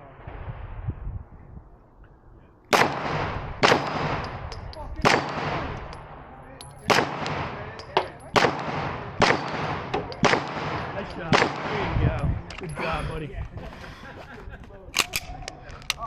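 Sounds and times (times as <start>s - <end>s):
pistol shots: 2.7s - 6.2s, 6.8s - 12.0s.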